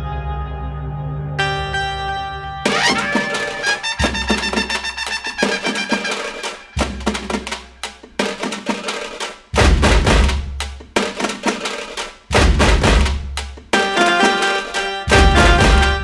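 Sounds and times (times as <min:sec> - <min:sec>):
percussion music: 0:02.6 - 0:16.0
deep bass hits: 0:09.6 - 0:10.6.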